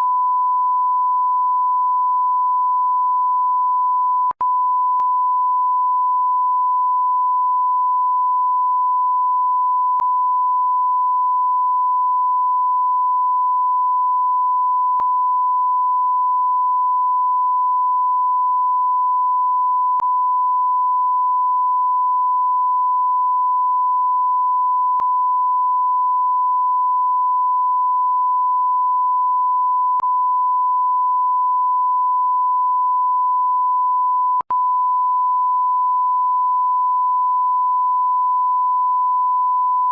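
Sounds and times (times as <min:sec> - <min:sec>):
censor bleep tone: 0:00.0 - 0:39.9.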